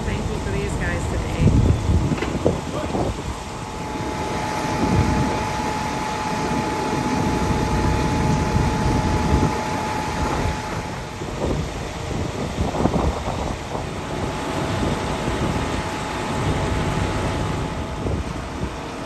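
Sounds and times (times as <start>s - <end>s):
wind buffeting microphone: 0.0s - 19.0s
machine whine: 3.5s - 19.0s.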